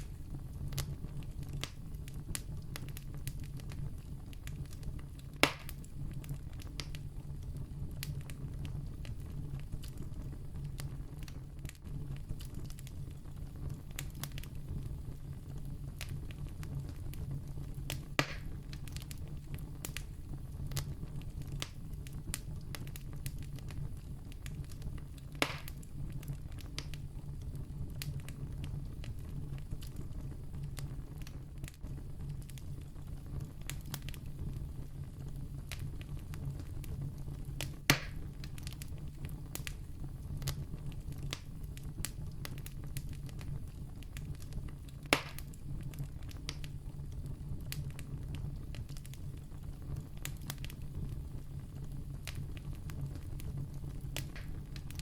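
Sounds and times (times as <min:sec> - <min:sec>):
campfire crackling: 0:00.0 - 0:55.0
loud fire pops: 0:00.0 - 0:55.0.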